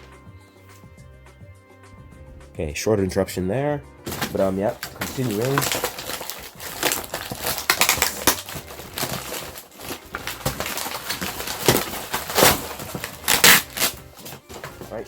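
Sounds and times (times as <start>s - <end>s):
plastic packaging crinkling: 4.1s - 15.0s.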